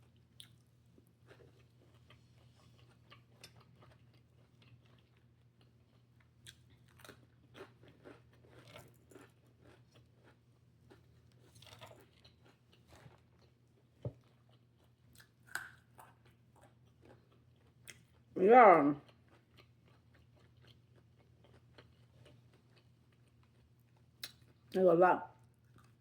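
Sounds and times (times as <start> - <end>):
person chewing crunchy salad: 0.0 - 18.3, 19.0 - 24.8, 25.4 - 26.0.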